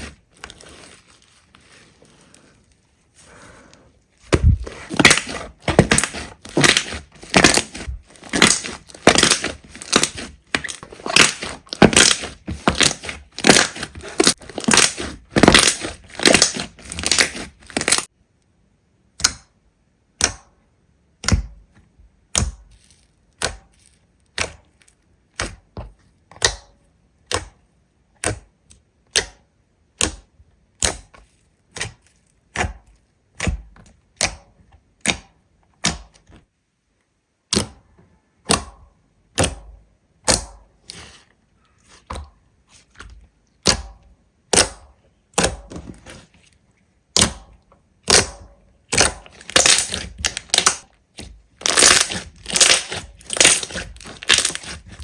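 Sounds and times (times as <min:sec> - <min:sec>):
slime crunching and crackling: 0:00.0 - 0:02.3, 0:04.4 - 0:18.1, 0:48.0 - 0:55.0.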